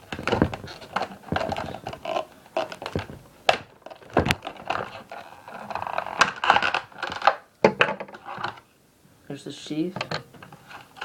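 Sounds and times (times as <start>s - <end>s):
packaging scraping and rustling: 0.0s - 7.4s.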